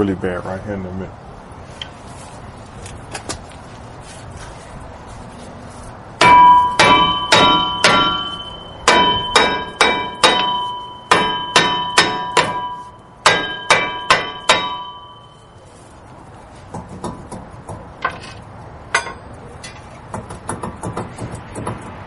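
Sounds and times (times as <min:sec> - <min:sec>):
hammer blows on ringing brake disc: 0:06.2 - 0:15.7, 0:18.9 - 0:19.8.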